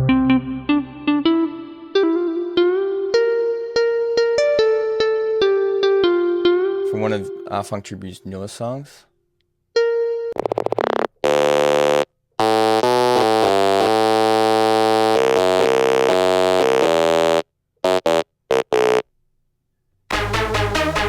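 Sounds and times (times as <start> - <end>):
synthesizer lead: 20.1 - 21.0.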